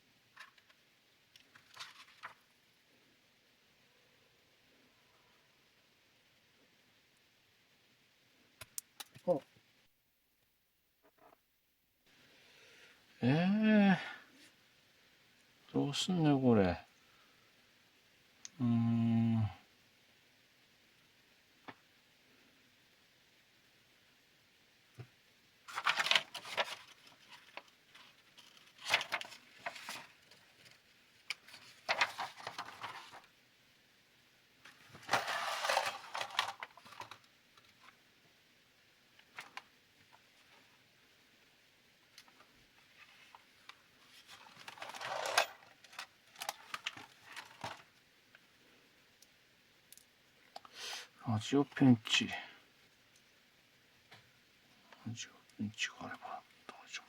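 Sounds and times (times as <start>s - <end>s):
small plastic parts clicking and rattling: 0.3s - 0.8s, 1.4s - 2.4s, 34.6s - 37.9s, 44.1s - 47.9s
small parts rustling and scraping: 0.3s - 2.6s, 25.7s - 33.3s, 34.6s - 38.0s, 39.2s - 40.8s, 42.1s - 48.4s.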